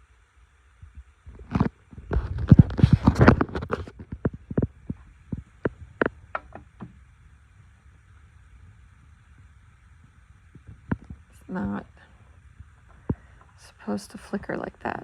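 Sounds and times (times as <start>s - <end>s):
handling clicks and knocks: 6.3s - 7.0s.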